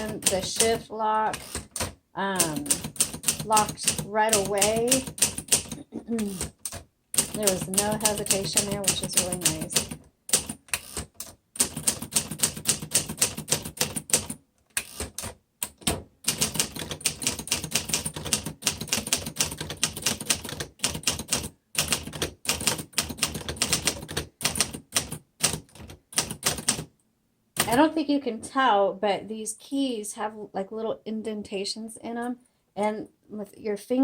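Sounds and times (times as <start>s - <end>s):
manual typewriter typing: 0.0s - 26.9s, 27.6s - 27.9s.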